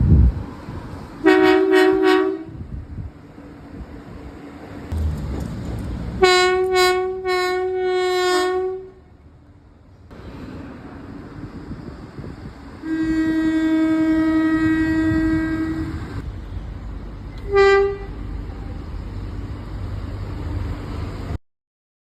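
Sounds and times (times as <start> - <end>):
low rumble of train: 0.0 - 21.4
train horn blast: 1.2 - 2.7, 6.2 - 9.1, 12.8 - 16.2, 17.4 - 18.2.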